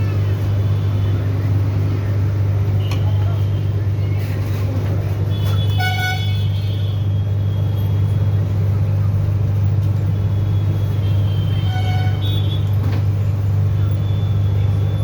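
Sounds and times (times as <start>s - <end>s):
vehicle engine rumble: 0.0s - 15.0s
horn sounding: 11.2s - 12.7s.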